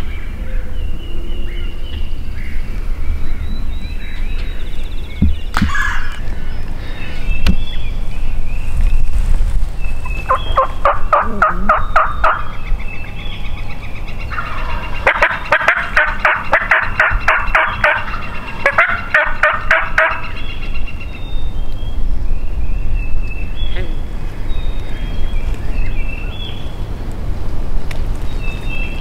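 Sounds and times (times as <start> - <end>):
songbirds chirping faintly: 0.0 - 29.0
wild turkeys yelping: 5.6 - 6.4, 10.2 - 12.6, 13.4 - 20.7.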